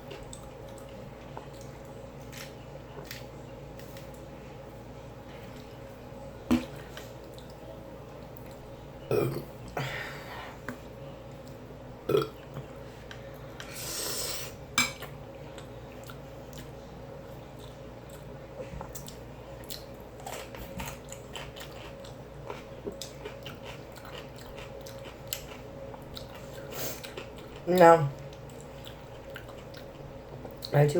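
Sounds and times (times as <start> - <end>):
person chewing: 15.0 - 30.7.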